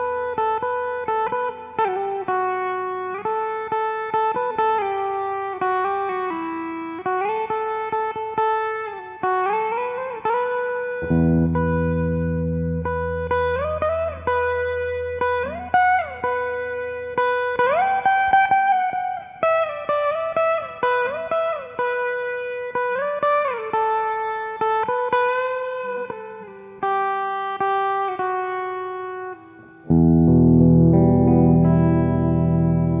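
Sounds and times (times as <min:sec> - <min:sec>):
electric guitar melody with bends: 0:00.0 - 0:33.0
electric guitar chord: 0:09.8 - 0:23.7, 0:28.2 - 0:33.0.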